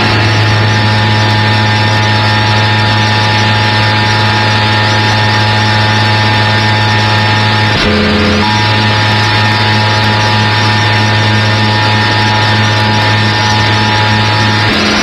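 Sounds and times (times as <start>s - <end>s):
radio buzzing hum: 0.0s - 15.0s
radio static hiss: 6.6s - 15.0s.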